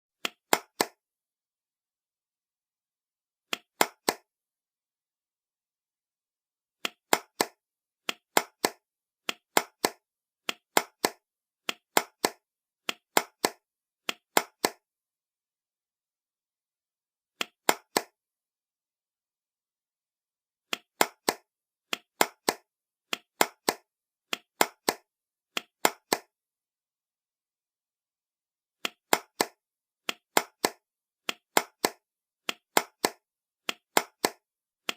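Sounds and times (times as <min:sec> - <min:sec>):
hand claps: 0:00.2 - 0:01.0, 0:03.5 - 0:04.3, 0:06.8 - 0:14.8, 0:17.4 - 0:18.2, 0:20.7 - 0:26.3, 0:28.8 - 0:34.9.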